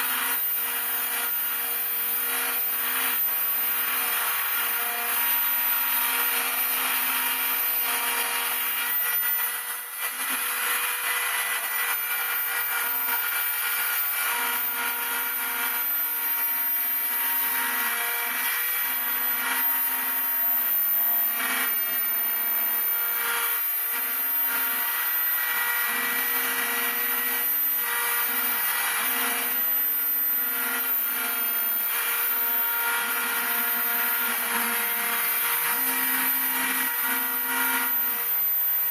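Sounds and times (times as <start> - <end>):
router spindle whine: 0.0 - 38.9.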